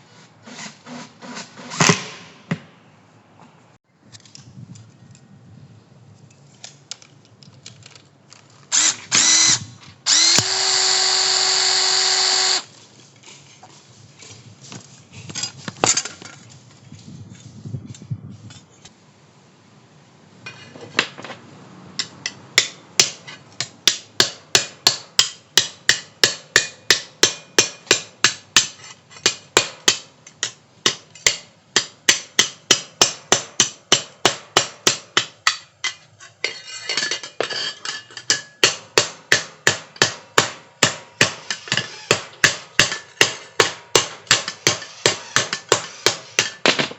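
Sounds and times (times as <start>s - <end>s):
electric drill spinning: 8.7s - 12.7s.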